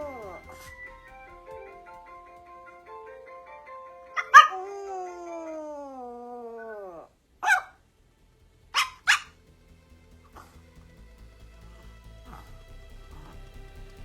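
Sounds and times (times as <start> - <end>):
dog howling: 0.0 - 7.7.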